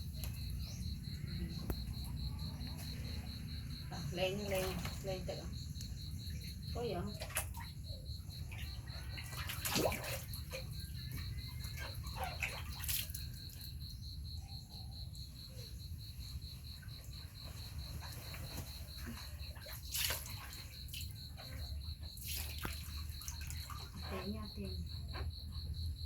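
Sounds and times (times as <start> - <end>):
insects chirping: 0.0 - 26.0
water splashing: 8.6 - 10.7, 19.5 - 21.1.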